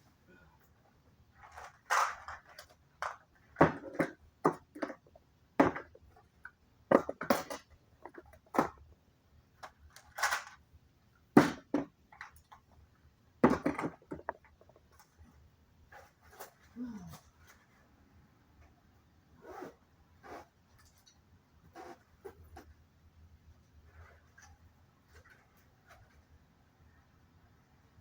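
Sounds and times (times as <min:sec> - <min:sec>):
household items knocking: 0:13.4 - 0:14.8.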